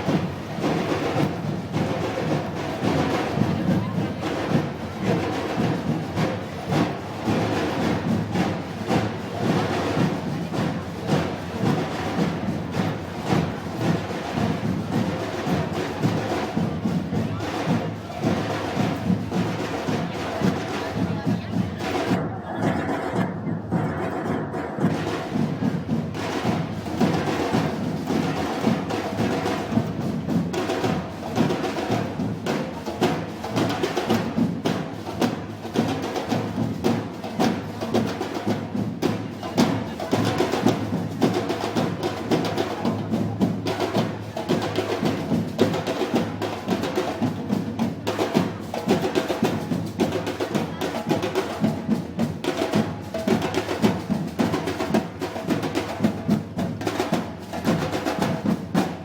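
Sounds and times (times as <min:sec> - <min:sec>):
rhythmic drums and percussion: 0:00.0 - 0:59.0.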